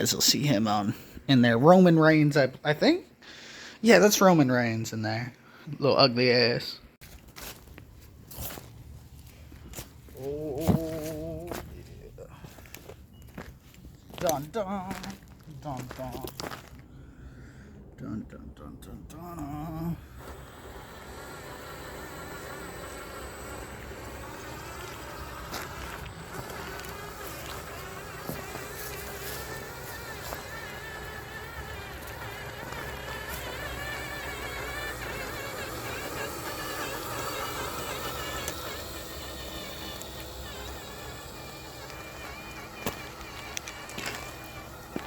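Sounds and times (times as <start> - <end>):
rc truck motor whining: 9.8 - 11.7, 19.2 - 45.0.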